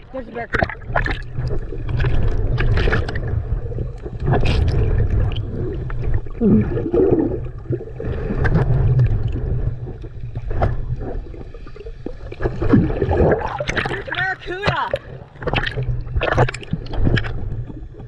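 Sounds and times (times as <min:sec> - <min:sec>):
muffled underwater rumble: 0:00.0 - 0:18.0
water splashing and bubbling: 0:00.0 - 0:18.0.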